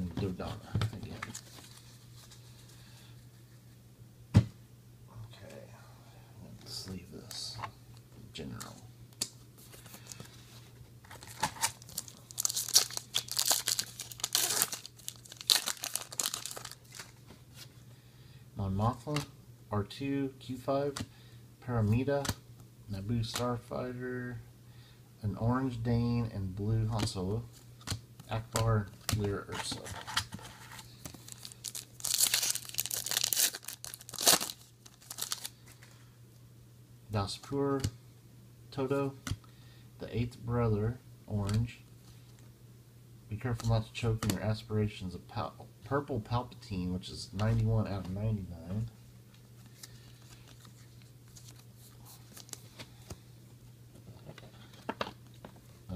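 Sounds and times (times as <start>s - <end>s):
wrapper tearing and crinkling: 11.1s - 17.2s, 31.1s - 35.6s.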